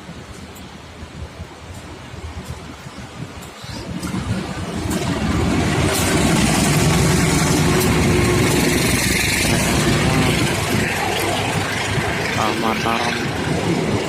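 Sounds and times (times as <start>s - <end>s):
train wheels rumbling on rails: 0.0s - 14.0s
locomotive engine running: 3.5s - 14.0s.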